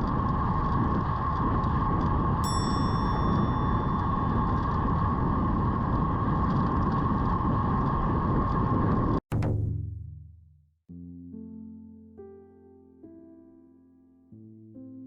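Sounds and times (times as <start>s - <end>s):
wind and road noise: 0.0s - 9.2s
mid-pitched hum: 0.0s - 10.5s.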